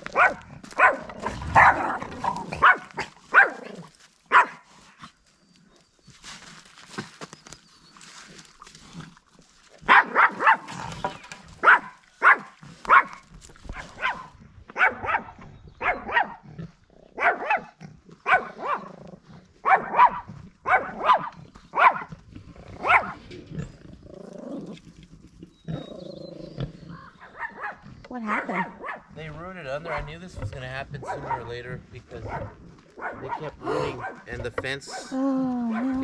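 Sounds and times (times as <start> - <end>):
dog barking: 0.1 - 3.7, 4.3 - 4.7, 9.9 - 10.7, 11.6 - 16.4, 17.2 - 18.9, 19.6 - 22.1, 22.8 - 23.2, 27.2 - 29.1, 29.8 - 30.2, 31.0 - 31.6, 32.2 - 35.1, 35.7 - 36.0.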